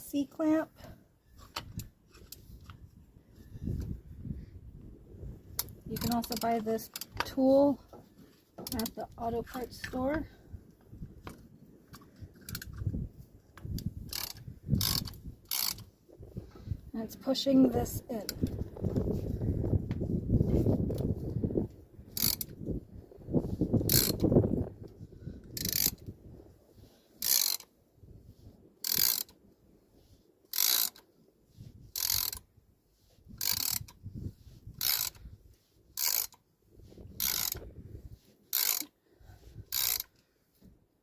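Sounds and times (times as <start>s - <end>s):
ratchet clicks: 5.6s - 7.3s, 8.6s - 9.0s, 12.4s - 12.8s, 13.7s - 15.8s, 22.2s - 22.5s, 23.9s - 24.3s, 25.6s - 26.0s, 27.2s - 27.7s, 28.8s - 29.3s, 30.5s - 31.0s, 32.0s - 32.4s, 33.4s - 34.0s, 34.8s - 35.2s, 36.0s - 36.4s, 37.2s - 37.6s, 38.5s - 38.9s, 39.7s - 40.2s.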